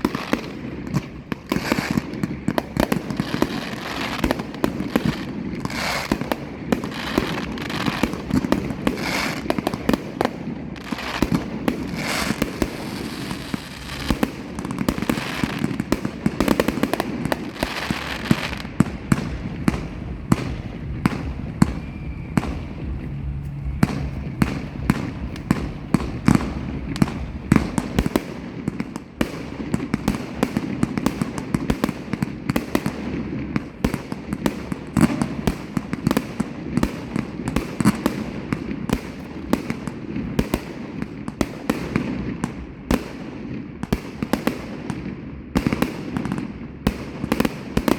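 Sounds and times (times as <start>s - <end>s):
fireworks bangs and crackles: 0.0s - 47.9s
low rumble: 18.5s - 28.6s.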